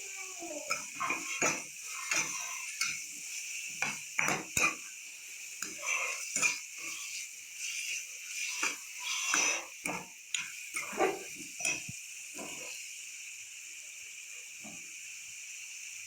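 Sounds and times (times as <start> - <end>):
spatula scraping a pan: 0.0 - 4.9, 5.5 - 12.8
onions sizzling in oil: 0.0 - 16.0.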